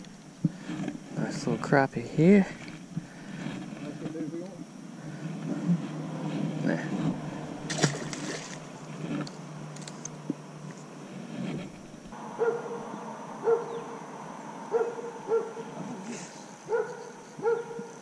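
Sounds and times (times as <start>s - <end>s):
splashing rustle: 7.6s - 9.3s
dog barking: 12.4s - 12.8s, 13.4s - 13.8s, 14.7s - 15.7s, 16.7s - 18.0s.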